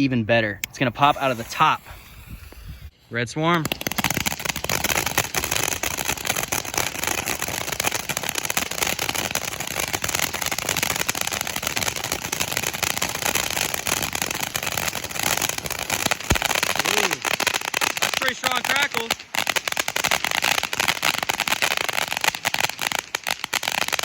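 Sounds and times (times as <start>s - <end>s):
firework fountain hissing: 0.6s - 2.9s, 3.5s - 24.0s
firework fountain crackling: 0.6s - 24.0s.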